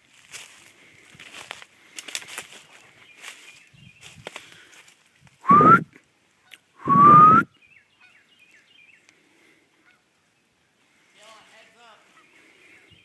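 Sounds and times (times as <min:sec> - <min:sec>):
breathy rising whistles: 0:05.4 - 0:05.9, 0:06.8 - 0:07.5.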